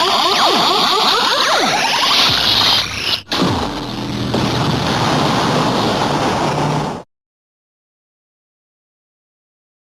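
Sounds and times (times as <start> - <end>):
synthesized rushing noise: 0.0 - 7.1
low hum: 2.0 - 7.0.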